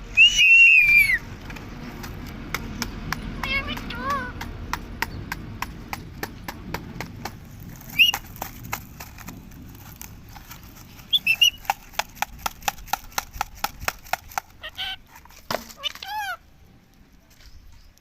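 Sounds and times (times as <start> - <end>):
high chirps: 11.1 - 11.7
parakeet call: 11.1 - 11.7, 14.6 - 15.2.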